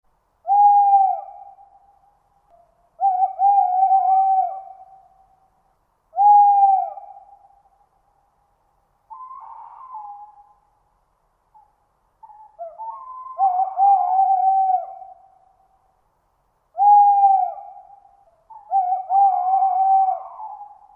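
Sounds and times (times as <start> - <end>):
owl hooting: 0.4 - 5.4, 6.1 - 7.8, 9.1 - 10.7, 11.5 - 15.8, 16.7 - 20.9
quieter higher bird call: 9.1 - 10.6, 11.5 - 15.6.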